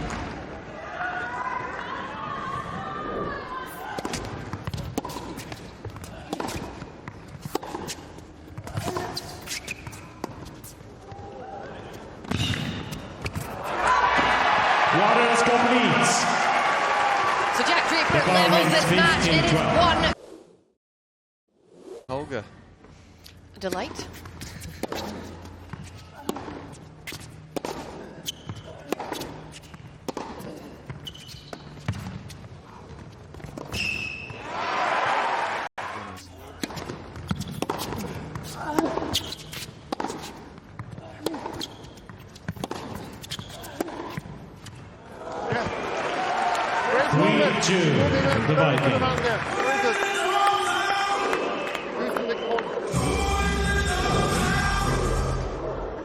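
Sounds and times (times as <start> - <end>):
shoe squeaks: 7.3 - 10.9, 23.6 - 32.5, 33.3 - 34.5, 35.9 - 44.8
tennis ball thudding on court: 30.0 - 31.0, 39.9 - 44.8.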